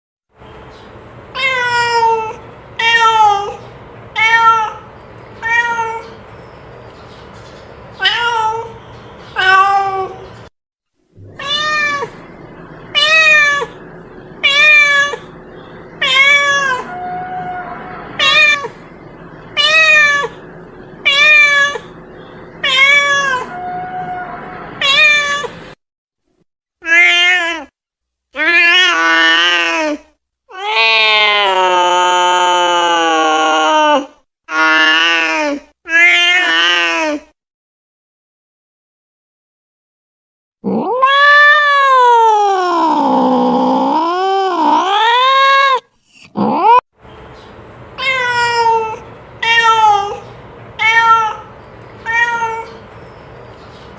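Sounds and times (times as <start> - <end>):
cat meowing: 1.4 - 3.6, 4.2 - 6.2, 8.0 - 8.8, 9.4 - 10.2, 11.2 - 12.3, 12.9 - 15.3, 16.0 - 18.8, 19.5 - 20.4, 21.0 - 22.0, 22.6 - 25.7, 35.9 - 37.2, 40.7 - 45.8, 48.0 - 52.8.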